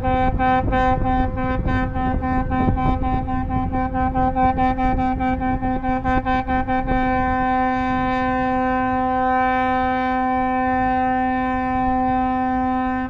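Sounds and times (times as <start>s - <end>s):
ship horn blast: 0.0s - 13.0s.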